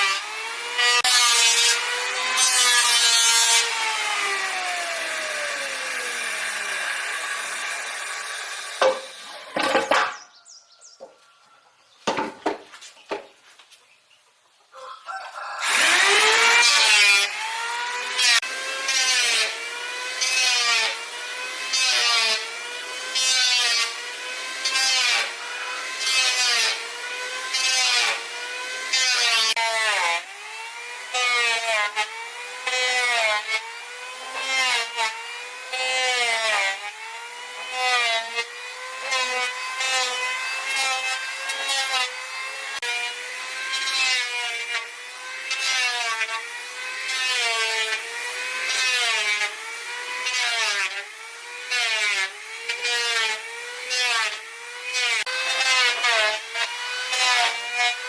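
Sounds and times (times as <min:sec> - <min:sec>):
handsaw cutting through wood: 0:00.0 - 0:10.2, 0:15.3 - 0:58.0
knocks: 0:12.0 - 0:13.3.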